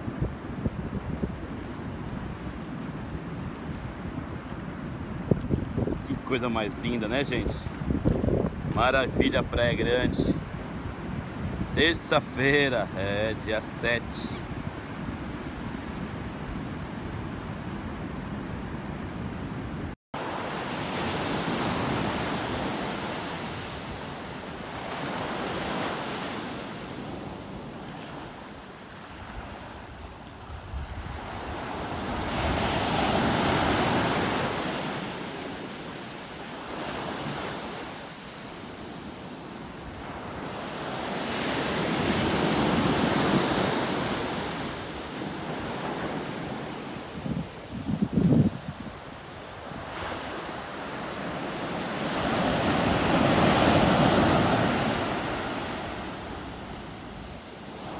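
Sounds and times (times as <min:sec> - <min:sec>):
sea surf breaking on beach: 0:20.2 - 0:57.9.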